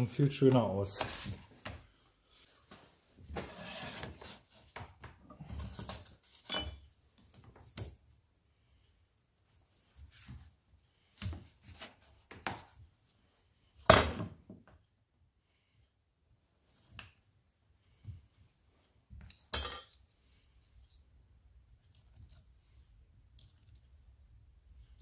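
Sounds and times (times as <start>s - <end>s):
tools and parts clattering: 5.3s - 7.4s, 19.2s - 20.1s.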